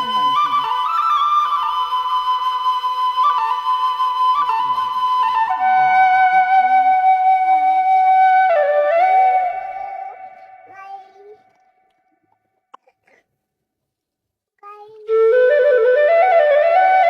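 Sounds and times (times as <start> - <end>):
flute playing long notes: 0.0 - 10.6, 15.1 - 17.0.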